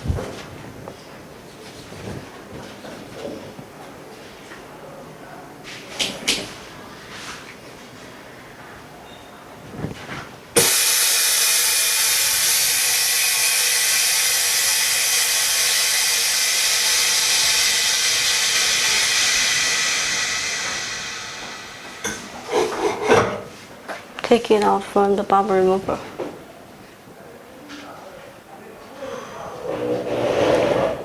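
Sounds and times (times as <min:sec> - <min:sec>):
compressed air hissing: 0:10.6 - 0:22.9.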